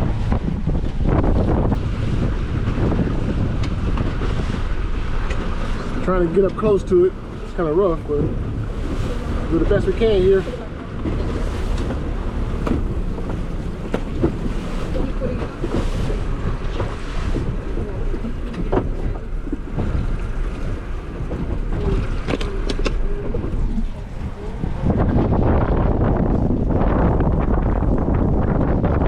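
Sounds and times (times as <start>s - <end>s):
waves slapping boat hull: 0.0s - 29.0s
wind buffeting microphone: 0.0s - 29.0s
sharp knocks: 11.8s - 14.7s.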